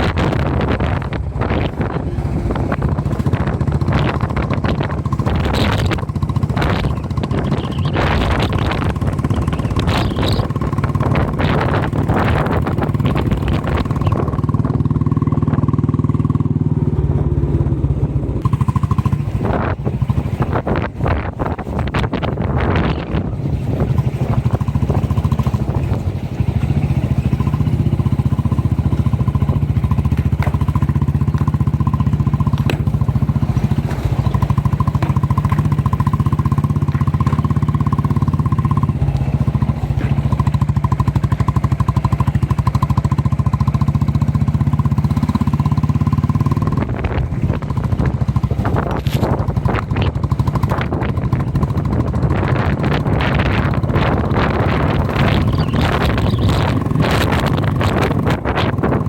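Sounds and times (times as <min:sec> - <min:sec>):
vehicle engine running: 0:00.0 - 0:59.0
wind on microphone: 0:00.0 - 0:59.0.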